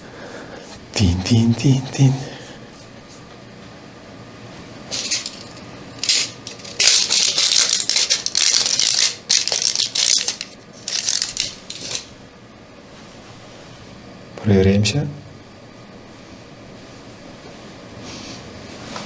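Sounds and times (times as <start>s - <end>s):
crinkling rattling handling noise: 4.9s - 12.2s.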